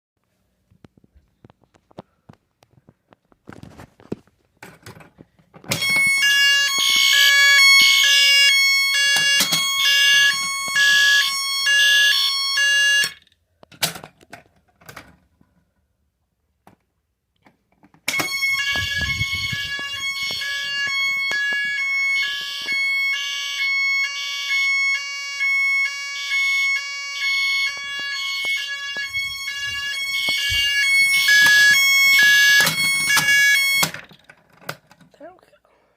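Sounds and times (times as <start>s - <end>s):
fire alarm pulsing tones: 5.7s - 13.2s, 18.1s - 34.1s.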